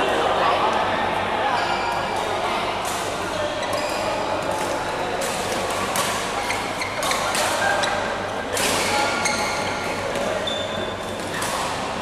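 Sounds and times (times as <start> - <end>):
indoor hall background noise: 0.0 - 12.0
rackets hitting shuttlecock: 4.4 - 7.8.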